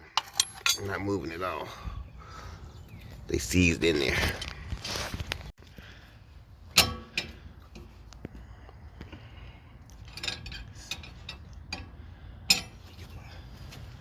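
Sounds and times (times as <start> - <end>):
metallic clinks and knocks: 0.1 - 0.9.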